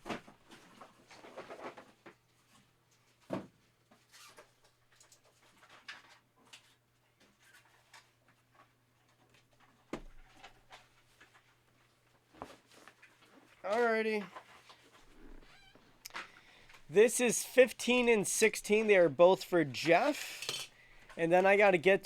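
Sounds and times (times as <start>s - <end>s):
cards and packaging rustling: 12.4s - 15.4s, 16.1s - 22.0s.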